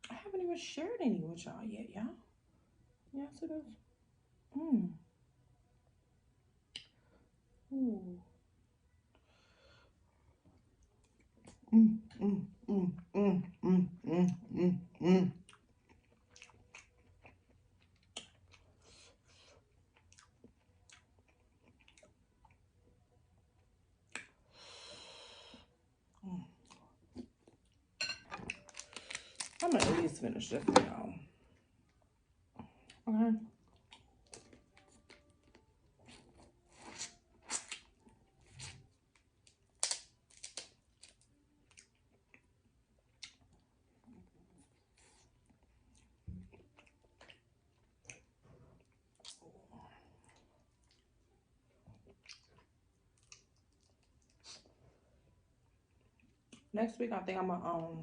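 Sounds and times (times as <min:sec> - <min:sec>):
chewing seafood: 0:15.4 - 0:22.8, 0:33.6 - 0:54.8.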